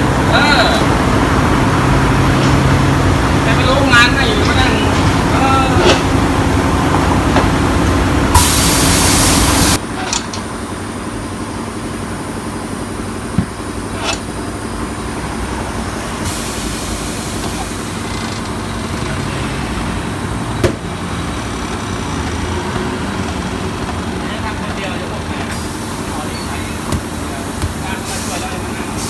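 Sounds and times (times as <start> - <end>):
compressed air hissing: 8.3 - 9.8, 16.2 - 18.1, 25.5 - 29.0.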